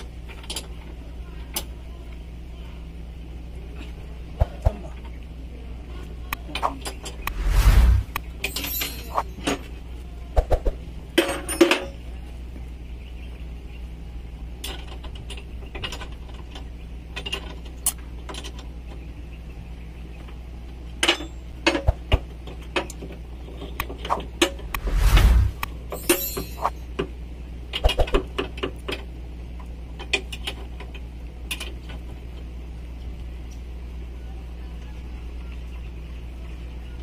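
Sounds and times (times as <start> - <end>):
steady low hum: 2.2 - 11.1, 23.2 - 27.6
metallic clinks and knocks: 25.9 - 26.8.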